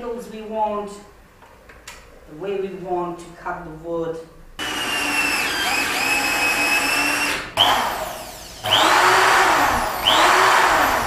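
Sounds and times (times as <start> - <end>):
power tool motor whining: 4.6 - 11.0.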